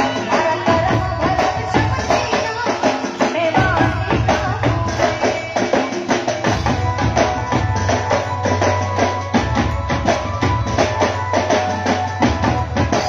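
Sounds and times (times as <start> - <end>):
fast percussion beat: 0.0 - 13.0
held melody: 5.4 - 13.0.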